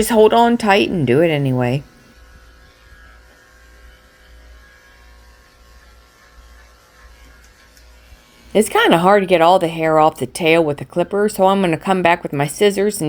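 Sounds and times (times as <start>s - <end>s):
electric clippers buzzing: 0.0s - 10.1s.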